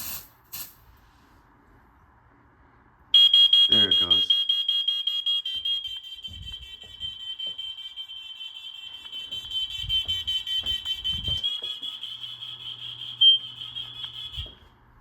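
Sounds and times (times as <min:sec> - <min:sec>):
smoke alarm high-pitched tone: 0:03.1 - 0:14.8.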